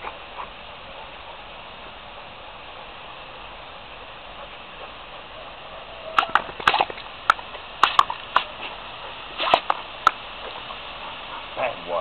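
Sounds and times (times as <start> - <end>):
garden hose spray hissing: 0.0 - 12.0
dog snapping its jaws: 6.2 - 8.6, 9.4 - 10.2.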